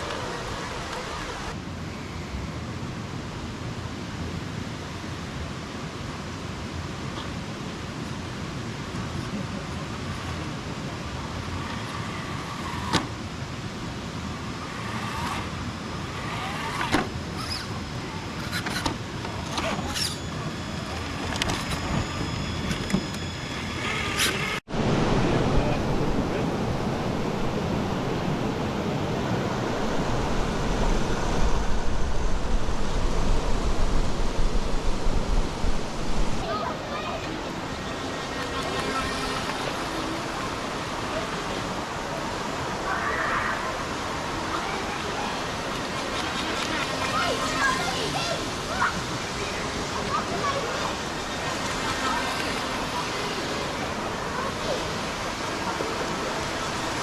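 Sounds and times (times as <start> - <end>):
background rushing noise: 0.0 - 57.0
small electric motor whining: 14.5 - 24.6, 37.2 - 42.1.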